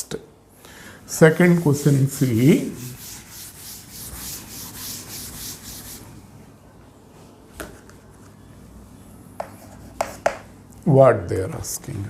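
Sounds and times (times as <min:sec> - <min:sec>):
rubbing strokes on writing surface: 0:01.3 - 0:06.1.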